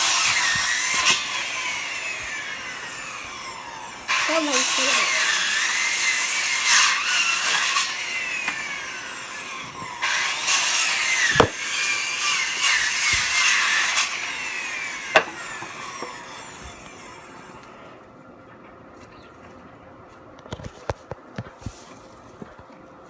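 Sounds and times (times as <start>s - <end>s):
saw cutting through wood: 0.0s - 17.9s.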